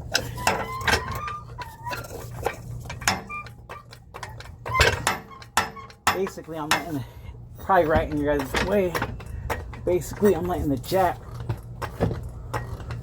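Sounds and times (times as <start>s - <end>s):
short metal squeaks: 0.0s - 7.1s
metal knocks and clicks: 0.1s - 7.0s, 7.8s - 10.6s.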